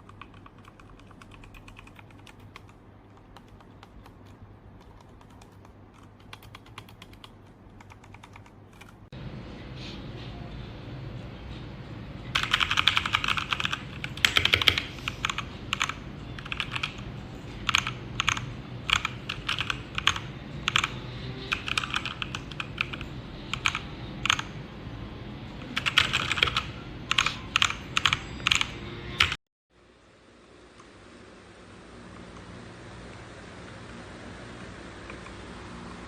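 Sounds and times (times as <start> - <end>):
mechanical keyboard keys clacking: 0.0 - 9.0, 12.4 - 17.0, 17.6 - 24.5, 25.6 - 29.4.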